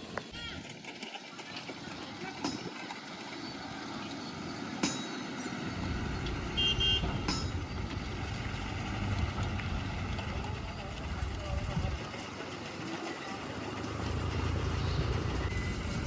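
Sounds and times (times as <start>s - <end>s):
diesel machinery rumbling: 0.0s - 16.0s
sharp knocks: 7.0s - 7.7s.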